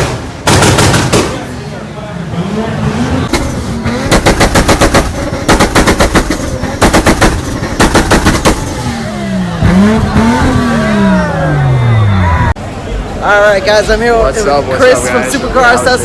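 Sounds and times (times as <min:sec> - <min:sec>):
car engine revving: 0:00.1 - 0:12.8
car engine launch limiter pops: 0:03.3 - 0:10.7.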